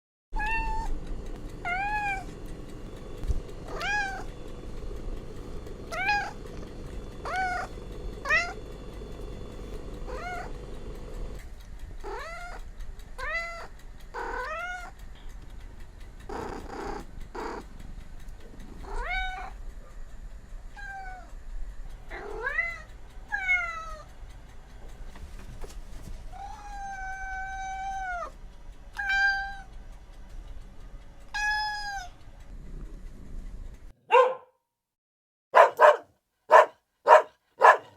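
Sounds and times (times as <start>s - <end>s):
cats meowing: 0.4s - 1.0s, 1.6s - 2.4s, 3.6s - 4.4s, 5.9s - 8.7s, 10.0s - 10.6s, 12.0s - 12.6s, 13.2s - 15.0s, 18.8s - 19.6s, 20.7s - 21.4s, 22.1s - 24.1s, 26.3s - 28.4s, 29.0s - 29.7s, 31.4s - 32.2s.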